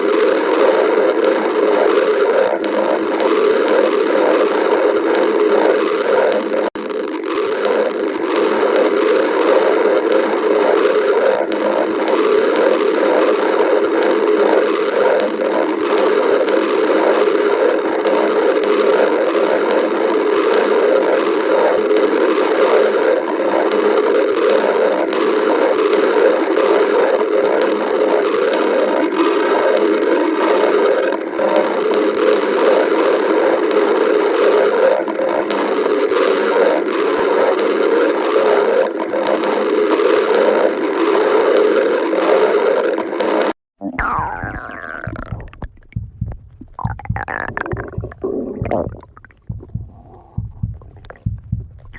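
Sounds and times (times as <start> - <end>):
stomach growling: 0.0 - 29.1, 43.8 - 51.9.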